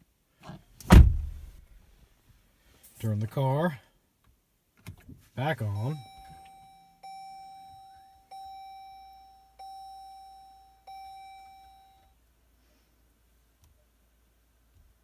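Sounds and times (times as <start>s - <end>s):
car warning chime: 5.5s - 12.2s.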